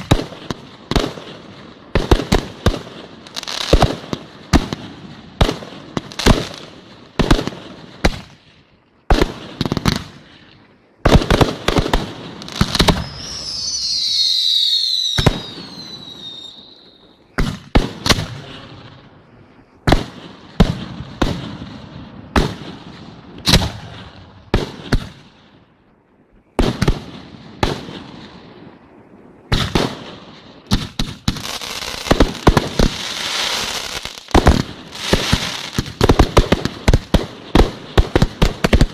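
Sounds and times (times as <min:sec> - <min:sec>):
firework crackling: 0:00.0 - 0:25.4, 0:26.6 - 0:38.9
falling firework whistles: 0:12.4 - 0:18.3.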